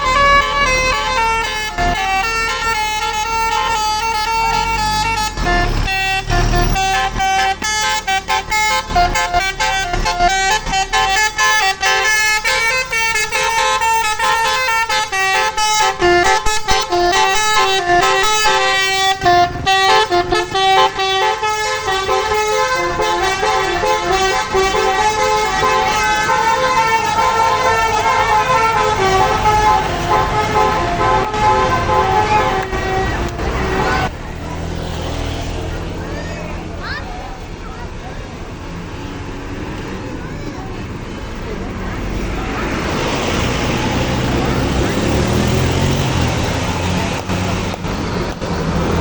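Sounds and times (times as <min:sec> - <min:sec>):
multi-tone air horn melody: 0:00.0 - 0:34.1.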